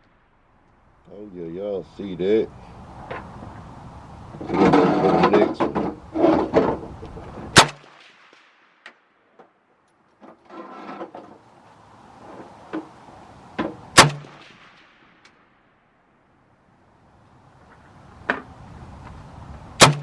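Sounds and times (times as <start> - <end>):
rifle shots: 7.5 - 9.2, 14.0 - 15.6, 19.8 - 20.0.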